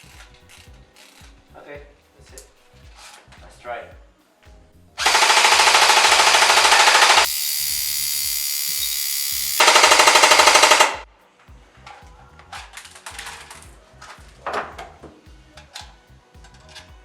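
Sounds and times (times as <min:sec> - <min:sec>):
airsoft gun firing automatic: 0:05.0 - 0:07.3, 0:09.6 - 0:11.1.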